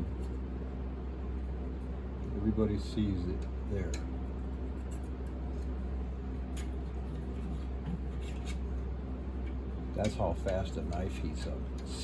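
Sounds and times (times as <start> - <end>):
low electrical hum: 0.0 - 12.0
knife scraping and tapping: 6.4 - 8.7.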